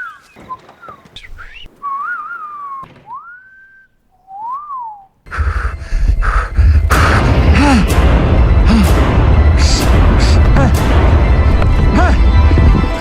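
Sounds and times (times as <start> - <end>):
man whistling: 0.0 - 5.6
loud noisy rumble: 5.3 - 13.0.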